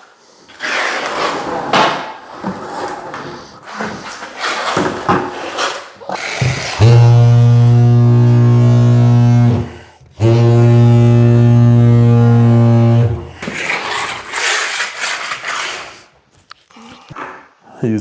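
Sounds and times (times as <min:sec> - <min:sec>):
tile vibrator humming: 0:06.2 - 0:13.7.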